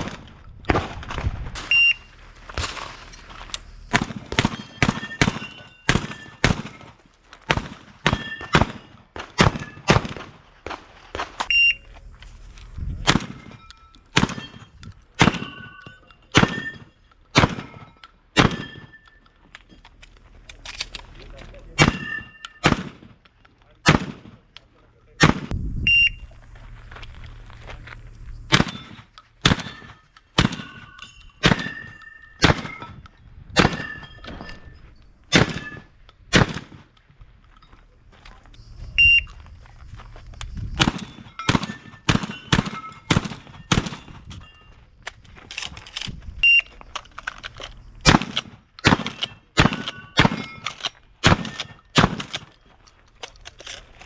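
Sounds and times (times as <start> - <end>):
shotgun firing: 0.0 - 1.4, 3.9 - 6.9, 7.5 - 10.4, 13.0 - 15.6, 16.3 - 18.9, 21.8 - 23.2, 23.8 - 24.4, 25.2 - 25.6, 28.5 - 32.9, 33.6 - 34.0, 35.3 - 36.9, 40.8 - 44.2, 48.0 - 52.5.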